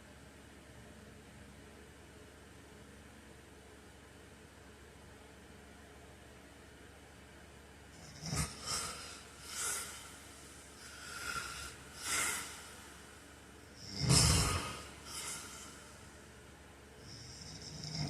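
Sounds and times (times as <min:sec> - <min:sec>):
man snoring loudly: 0:08.0 - 0:13.1, 0:13.8 - 0:15.9, 0:17.0 - 0:18.0
hissing breaths and snorts: 0:08.0 - 0:16.2, 0:17.0 - 0:18.0.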